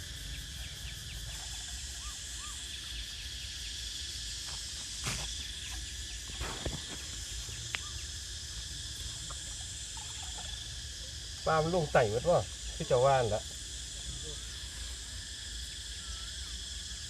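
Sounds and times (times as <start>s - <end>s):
insect chorus: 0.0s - 17.0s.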